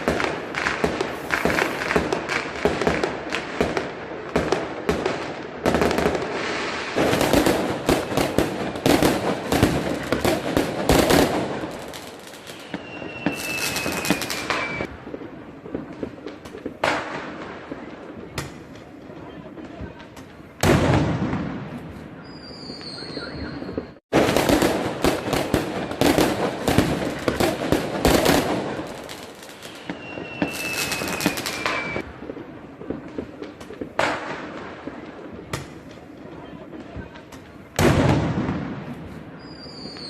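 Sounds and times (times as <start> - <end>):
fireworks bangs and crackling: 0.0 - 40.0
firework whistle falling tone: 12.3 - 14.9, 22.2 - 24.0, 29.5 - 32.0, 39.4 - 40.0.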